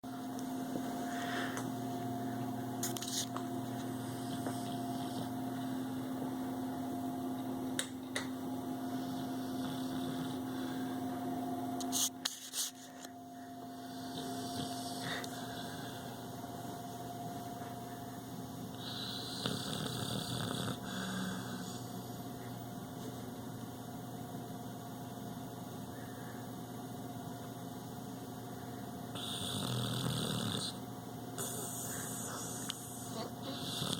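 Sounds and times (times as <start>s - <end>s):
electrical hum: 0.0s - 33.9s
dog snoring: 3.8s - 5.8s, 8.8s - 10.9s, 13.8s - 16.2s, 18.7s - 22.2s, 29.1s - 33.9s.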